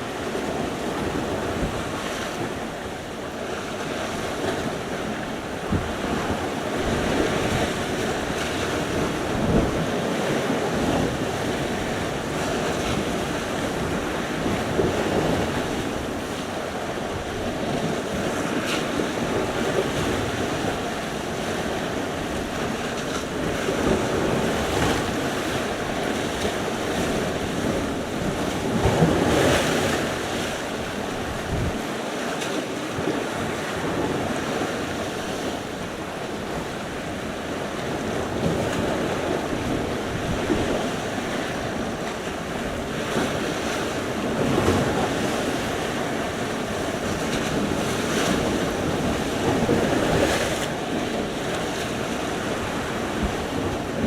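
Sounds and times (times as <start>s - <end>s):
wind buffeting microphone: 0.0s - 32.0s, 32.9s - 54.0s
waves breaking on shore: 0.0s - 54.0s.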